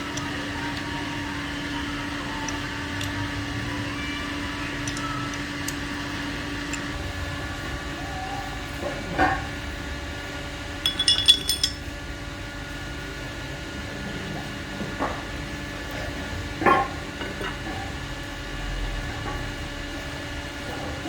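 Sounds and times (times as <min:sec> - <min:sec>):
ringing metallic clinks: 0:10.8 - 0:11.9.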